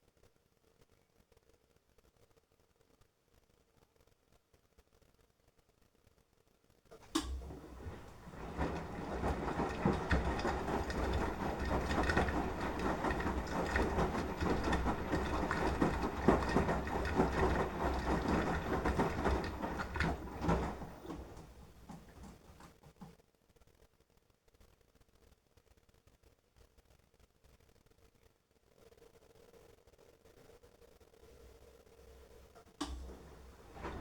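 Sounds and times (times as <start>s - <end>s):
laundry and water tumbling: 7.0s - 23.1s, 32.8s - 34.0s
washing machine click: 7.0s - 23.1s, 32.8s - 34.0s
low motor hum: 7.1s - 23.1s, 32.8s - 34.0s.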